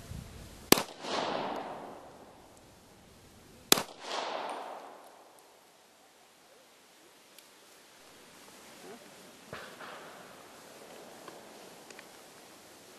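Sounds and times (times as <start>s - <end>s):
pistol shots with rolling echo: 0.7s - 2.5s, 3.7s - 5.7s.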